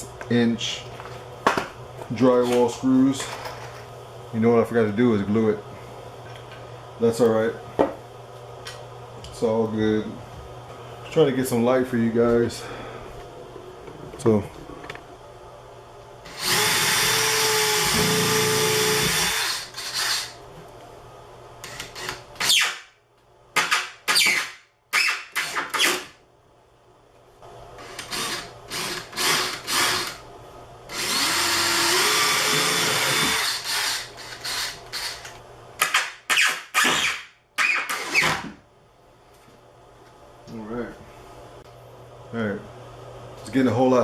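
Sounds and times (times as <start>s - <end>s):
drill trigger bursts driving screws: 16.3s - 20.4s, 27.8s - 30.2s, 30.9s - 38.3s
power drill motor running: 16.3s - 20.4s, 27.8s - 30.2s, 30.9s - 35.3s.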